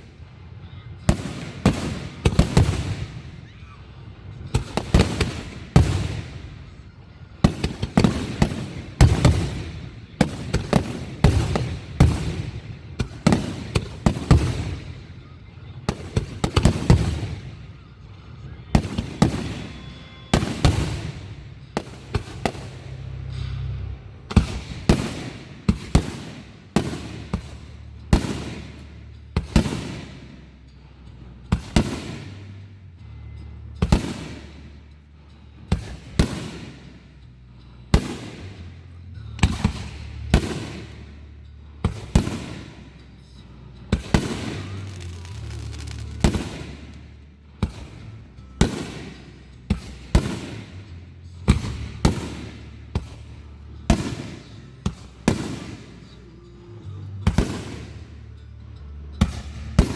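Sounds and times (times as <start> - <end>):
fireworks bursting with echoing bangs: 1.0 - 3.7, 4.5 - 6.8, 7.4 - 15.1, 15.9 - 17.6, 18.8 - 23.7, 24.3 - 30.5, 31.5 - 32.6, 33.8 - 34.8, 35.7 - 37.1, 38.0 - 38.7, 39.4 - 41.2, 41.9 - 43.0, 43.9 - 56.2, 57.3 - 58.2, 59.2 - 59.9
music with bass line: 26.8 - 59.9.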